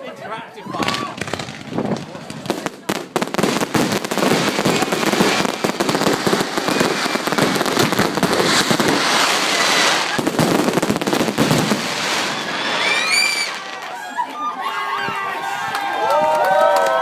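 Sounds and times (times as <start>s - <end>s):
fireworks crackling and popping: 0.7s - 14.2s.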